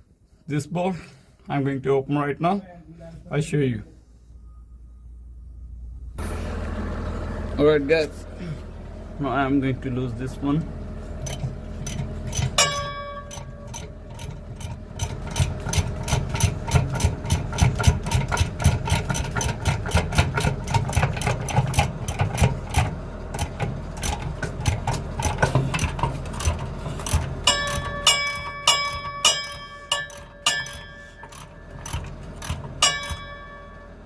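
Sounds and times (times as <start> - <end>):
ratchet wrench clicking: 11.3 - 33.6.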